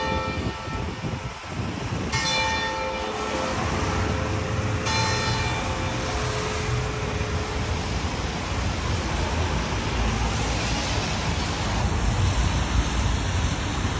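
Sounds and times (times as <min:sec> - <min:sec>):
church bell hum: 0:00.0 - 0:01.0, 0:02.1 - 0:08.3
city traffic rumble: 0:00.0 - 0:13.9.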